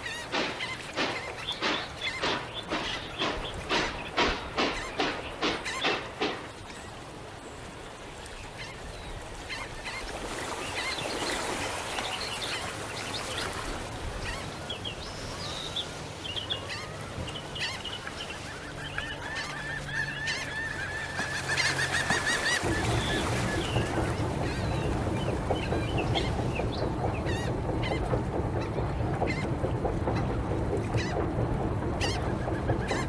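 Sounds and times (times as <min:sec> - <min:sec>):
birds honking calls: 0:00.0 - 0:06.5, 0:14.2 - 0:33.0
steady low hum: 0:21.9 - 0:33.0.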